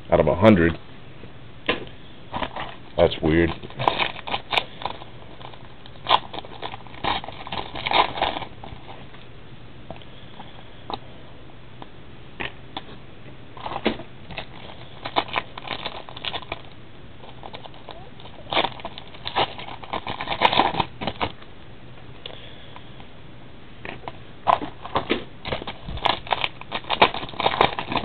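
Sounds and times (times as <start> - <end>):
steady low hum: 0.0 - 28.0
cards rustling and clicking: 13.6 - 21.4, 24.5 - 28.0.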